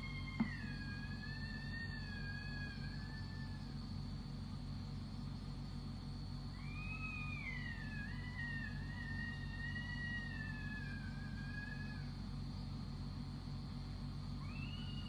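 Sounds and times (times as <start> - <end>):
steady low hum: 0.0 - 15.0
high wavering scream: 6.5 - 12.1, 14.4 - 15.0.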